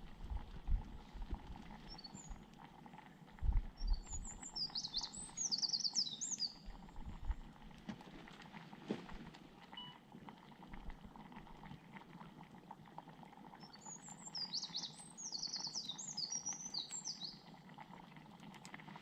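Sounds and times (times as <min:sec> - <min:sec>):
songbird singing: 0:01.8 - 0:02.4, 0:03.8 - 0:06.9, 0:13.6 - 0:17.4
faint clicks: 0:18.3 - 0:19.0.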